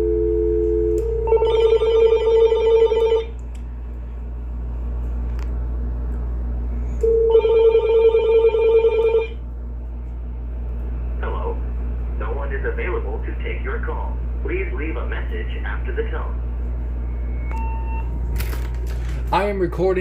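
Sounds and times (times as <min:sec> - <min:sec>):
dial tone: 0:00.0 - 0:03.4, 0:07.0 - 0:09.4, 0:17.1 - 0:18.2
warbling electronic phone ring: 0:01.2 - 0:03.3, 0:07.1 - 0:09.4.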